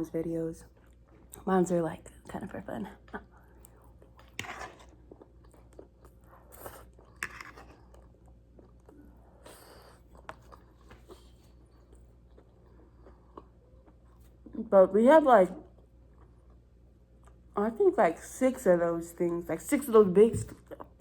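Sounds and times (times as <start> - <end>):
person chewing food: 0.7 - 1.4, 3.3 - 14.6, 15.7 - 17.5.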